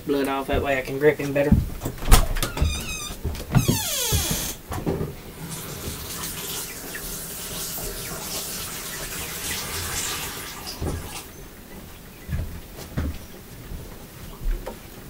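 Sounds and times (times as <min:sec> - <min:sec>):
water running from tap: 0:05.3 - 0:11.3.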